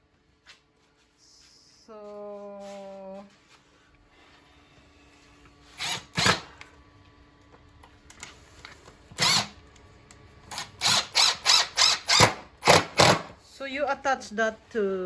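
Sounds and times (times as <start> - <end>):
tool rasping bursts: 5.8 - 6.5, 9.2 - 9.6, 10.5 - 13.3.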